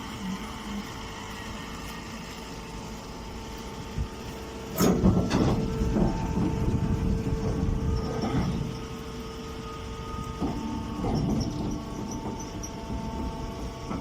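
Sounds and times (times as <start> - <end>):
baling machine motor hum: 0.0 - 14.0
loud mechanical clatter: 4.5 - 9.1, 9.8 - 14.0.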